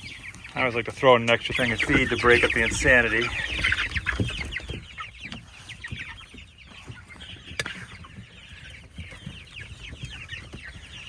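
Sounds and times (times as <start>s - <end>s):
chicks peeping: 0.0s - 11.0s.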